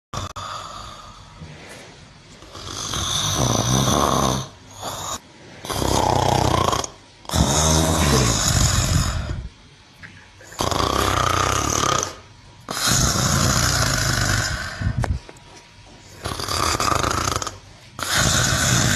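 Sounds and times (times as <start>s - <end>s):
cow snoring: 2.4s - 9.5s, 10.5s - 15.0s, 16.2s - 18.9s.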